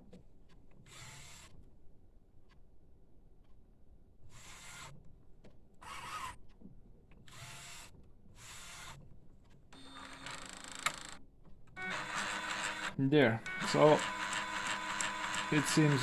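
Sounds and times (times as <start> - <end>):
printer motors whirring: 11.8 - 16.0.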